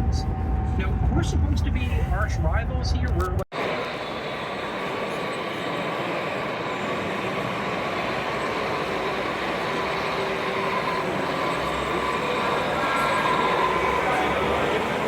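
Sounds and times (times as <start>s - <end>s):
train rail rumble: 0.0s - 15.0s.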